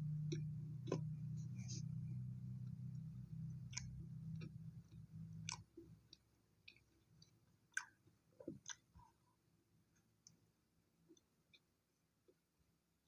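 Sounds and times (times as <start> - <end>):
low steady hum: 0.0 - 12.8
chewing toast: 3.6 - 9.2.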